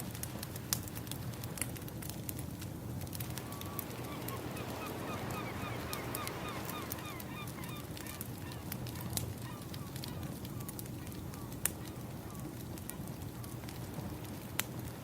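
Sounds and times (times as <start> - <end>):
crackling wood fire: 0.0 - 15.0
ocean waves: 3.2 - 15.0.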